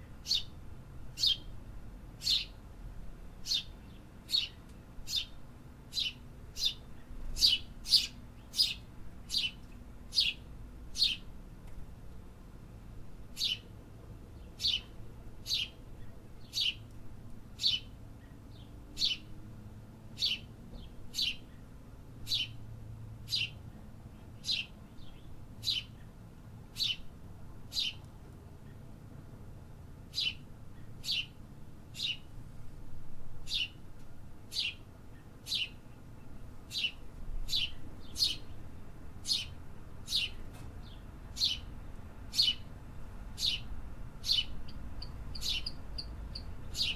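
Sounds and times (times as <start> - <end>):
bird chirping: 0.2 - 0.6, 1.2 - 1.5, 2.2 - 2.6, 3.4 - 11.3, 13.3 - 13.7, 14.4 - 16.8, 17.6 - 19.3, 20.2 - 21.6, 22.2 - 22.6, 23.2 - 27.1, 27.7 - 28.0, 30.1 - 32.3, 33.4 - 33.8, 34.5 - 41.7, 42.3 - 42.7, 43.4 - 46.9.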